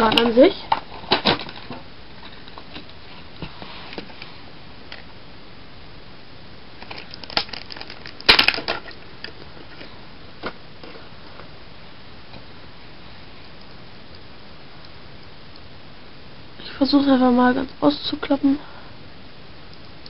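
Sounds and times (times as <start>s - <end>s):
plastic toy clattering: 6.8s - 9.0s
plastic toy clicks and rustles: 6.8s - 9.4s.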